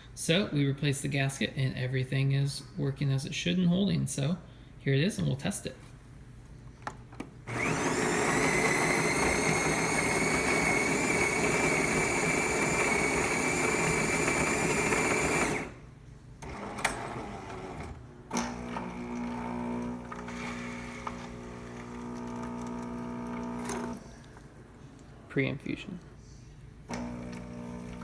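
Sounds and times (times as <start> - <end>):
coffee grinder whirring: 7.5 - 15.8, 18.5 - 24.0, 26.9 - 28.0
coffee machine humming: 7.5 - 15.8, 16.4 - 24.2, 26.8 - 28.0.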